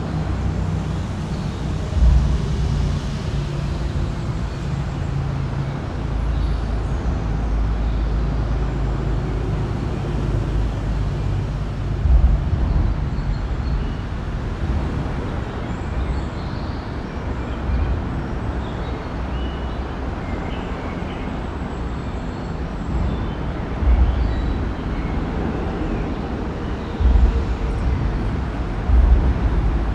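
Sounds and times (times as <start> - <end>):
traffic rumble on bridge: 0.0 - 29.9
low thumps: 1.5 - 5.0, 10.7 - 15.4, 22.9 - 29.9.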